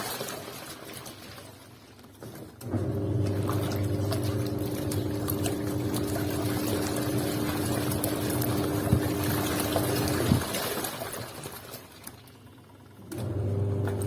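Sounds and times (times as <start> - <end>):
water churning in tub: 0.0 - 14.0
washing machine motor humming: 2.3 - 14.0.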